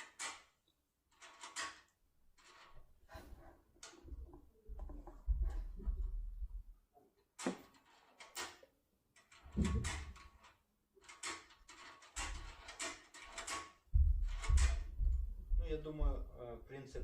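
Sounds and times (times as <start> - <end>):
lock pick clicking and scraping: 0.0 - 2.8, 7.4 - 13.8.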